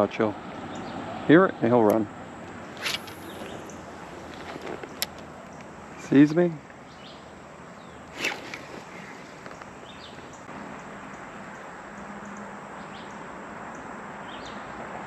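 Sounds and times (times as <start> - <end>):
steady hiss: 2.5 - 6.6.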